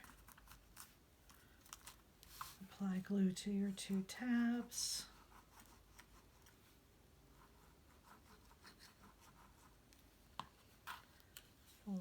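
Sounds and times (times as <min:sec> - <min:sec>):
faint scratches and taps: 0:07.4 - 0:11.8.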